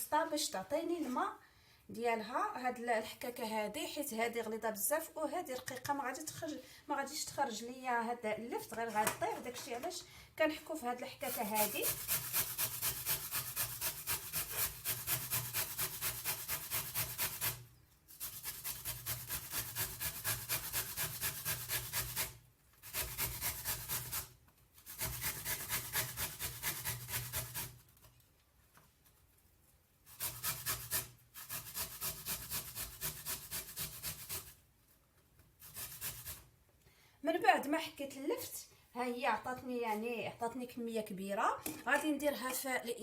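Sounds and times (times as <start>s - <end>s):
vegetable grated on hand grater: 11.2s - 27.8s, 30.1s - 34.6s, 35.6s - 36.4s.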